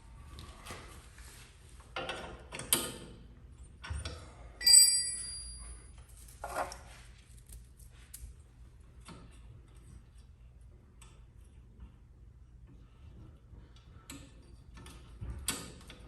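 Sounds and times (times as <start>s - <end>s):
loud ringing metal clink: 4.6s - 5.9s.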